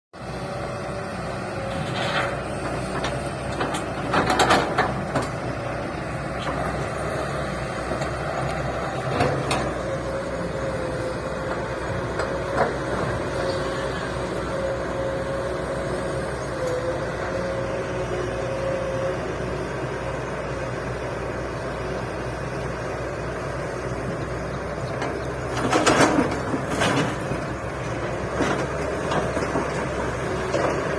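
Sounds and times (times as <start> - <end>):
excavator engine running: 0.2 - 30.9
metal clanks and knocks: 1.7 - 5.4.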